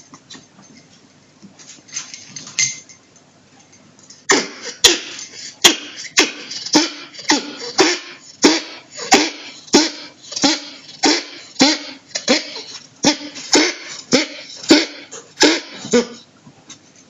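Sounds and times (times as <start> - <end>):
animal coughing harshly: 4.3 - 16.3.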